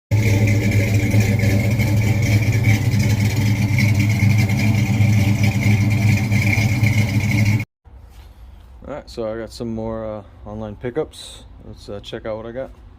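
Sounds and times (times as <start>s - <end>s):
engine running steadily: 0.1s - 7.7s.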